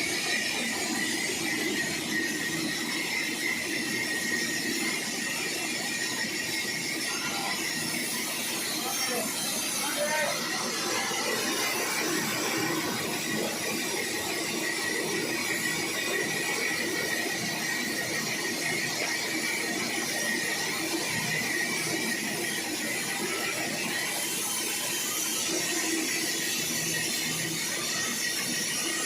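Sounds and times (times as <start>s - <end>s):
sawmill saw whining: 0.0s - 29.0s.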